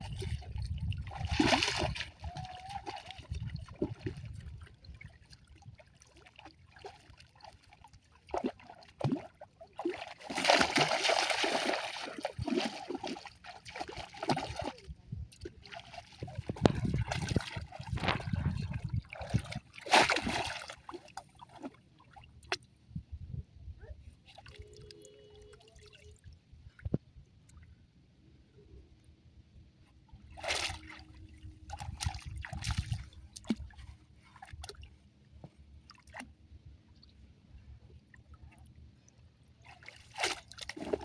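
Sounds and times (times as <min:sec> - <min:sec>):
water splashing: 0:00.0 - 0:22.5, 0:30.3 - 0:34.8, 0:39.6 - 0:41.0.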